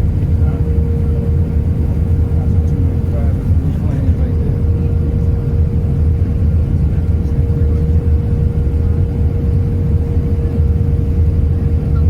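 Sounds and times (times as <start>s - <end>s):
airplane cabin engine rumble: 0.0s - 12.0s
constant hum: 0.0s - 12.0s.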